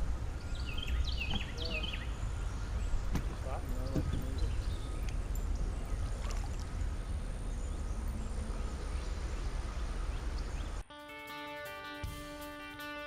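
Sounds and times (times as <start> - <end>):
water-side noise: 0.0 - 10.8
guitar music: 10.9 - 13.0.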